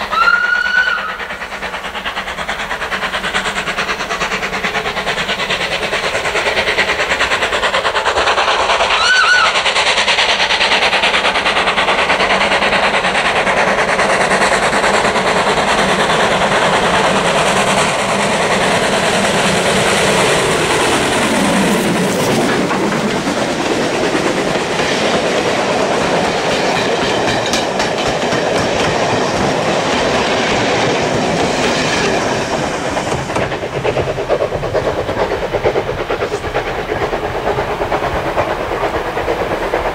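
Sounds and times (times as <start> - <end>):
steam whistle toot: 0.0 - 1.2, 9.0 - 9.6
steam train wheels and exhaust: 0.0 - 39.9.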